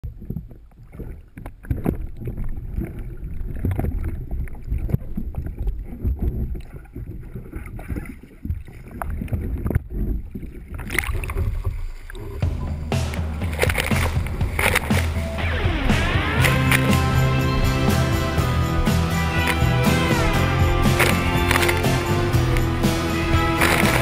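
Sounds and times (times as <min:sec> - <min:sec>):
water splashing against hull: 0:00.0 - 0:24.0
low rumble: 0:12.2 - 0:24.0.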